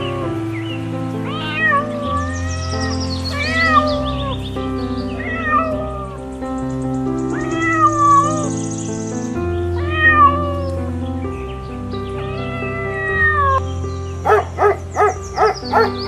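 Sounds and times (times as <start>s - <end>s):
background music: 0.0s - 16.0s
cat meowing: 1.2s - 4.4s, 5.2s - 6.2s, 7.3s - 8.5s, 9.7s - 10.9s, 12.2s - 13.6s, 14.3s - 15.9s.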